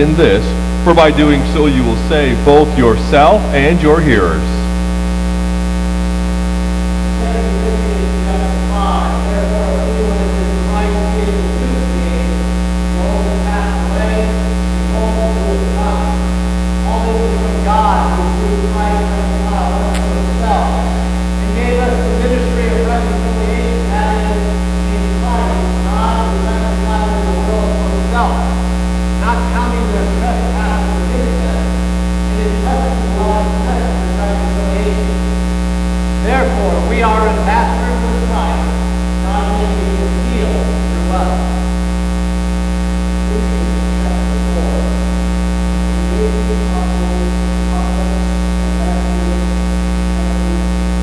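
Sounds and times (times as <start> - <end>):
faint voices: 0.0 - 4.6
electrical mains hum: 0.0 - 51.0.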